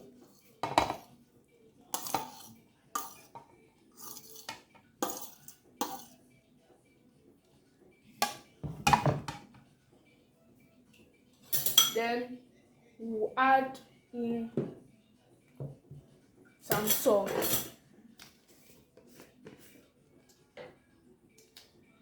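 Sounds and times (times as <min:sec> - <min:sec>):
utensil clinking against a bowl: 0:00.6 - 0:01.1, 0:01.9 - 0:06.2, 0:08.2 - 0:09.5, 0:11.4 - 0:12.0, 0:16.7 - 0:17.8.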